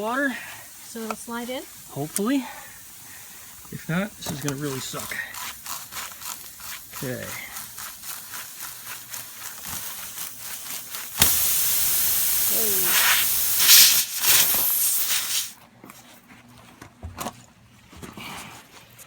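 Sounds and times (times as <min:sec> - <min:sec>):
air hissing out of tire puncture: 0:00.0 - 0:07.8, 0:09.8 - 0:15.6.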